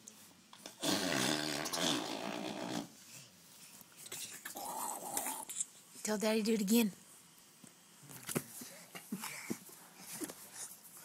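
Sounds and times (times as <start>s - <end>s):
baby growling engine noises: 4.4s - 5.5s.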